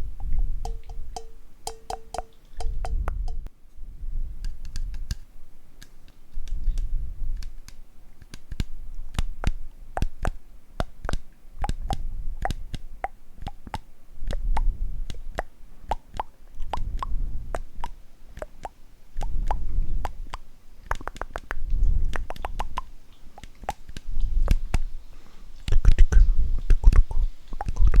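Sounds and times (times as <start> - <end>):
soft low rumbling: 0.0 - 5.6, 13.7 - 15.4, 16.6 - 18.0
tongue clicks and pops: 0.2 - 3.5, 4.4 - 5.2, 5.8 - 24.9, 25.6 - 28.0.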